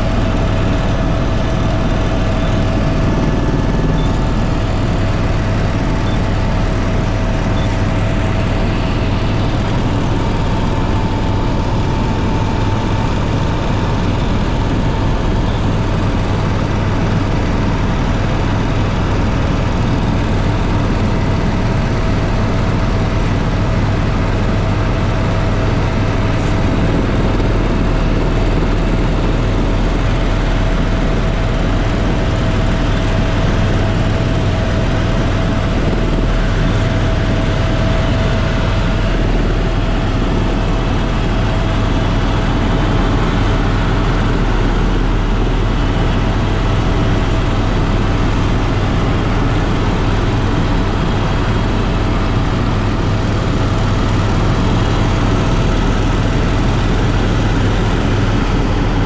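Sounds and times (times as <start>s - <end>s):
loud mechanical rumble: 0.0s - 59.0s
thin steady whine: 0.0s - 59.0s.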